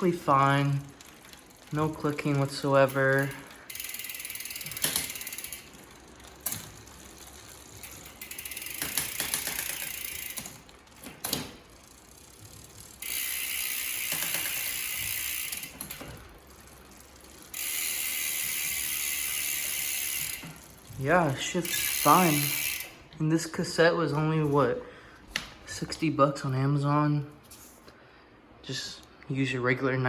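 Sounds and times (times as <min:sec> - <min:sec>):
bicycle freehub buzzing: 0:00.0 - 0:23.2.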